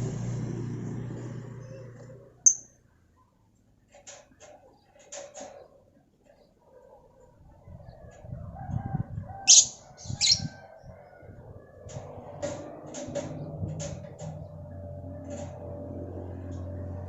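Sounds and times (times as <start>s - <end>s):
bird chirping: 2.5s - 2.7s, 9.5s - 10.5s
bird calling shrilly: 9.5s - 10.5s.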